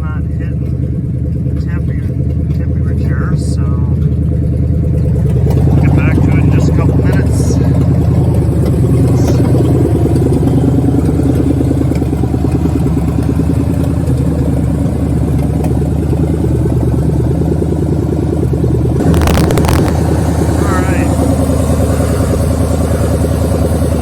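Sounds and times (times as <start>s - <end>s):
loud truck engine running: 0.0s - 24.0s.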